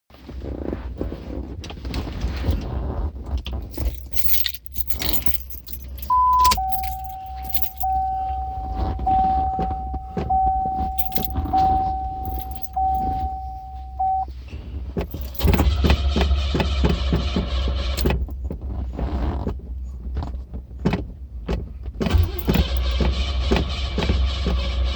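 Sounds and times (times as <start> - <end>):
keys jangling: 3.5 - 14.2, 15.0 - 15.8, 18.0 - 18.3, 22.1 - 23.0
dashboard warning chime: 5.6 - 14.4
starter cranking engine: 22.0 - 24.9.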